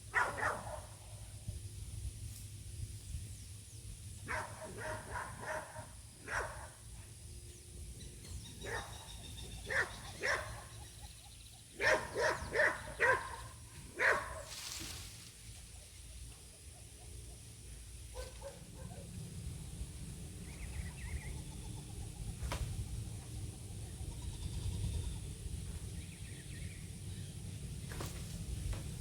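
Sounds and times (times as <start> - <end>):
dog barking: 0.1 - 1.0, 4.3 - 6.8, 8.6 - 10.8, 11.8 - 14.5, 18.1 - 19.1.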